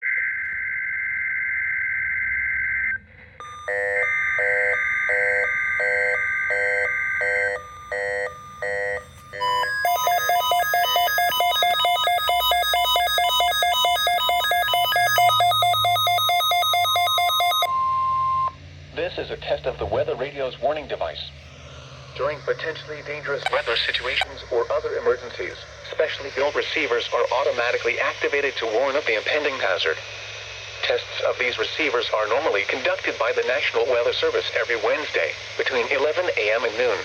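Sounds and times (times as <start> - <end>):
pulsed electronic beeps: 0.0 - 18.6, 21.7 - 29.8
steady alarm tone: 0.0 - 18.6, 21.5 - 37.0
warbling data-burst tones: 1.2 - 17.7, 21.5 - 37.0
rapid multi-pitched beeping: 3.4 - 18.5, 22.2 - 37.0.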